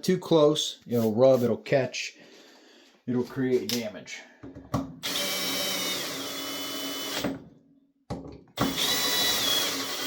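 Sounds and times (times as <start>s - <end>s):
power drill whining: 5.0s - 7.4s, 8.6s - 10.0s.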